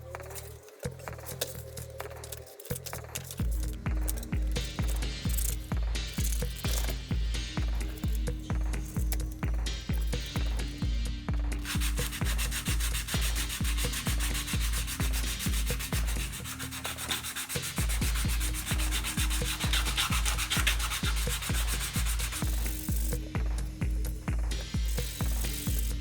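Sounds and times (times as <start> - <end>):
background music with beat: 0.0 - 26.0
sandpaper rubbing on plastic: 11.6 - 23.2.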